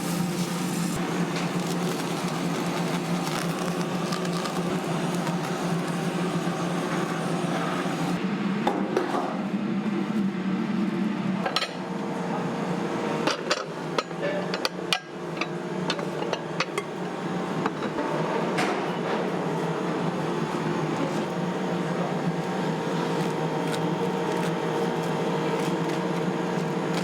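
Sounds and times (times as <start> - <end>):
food sizzling on griddle: 0.0 - 8.2.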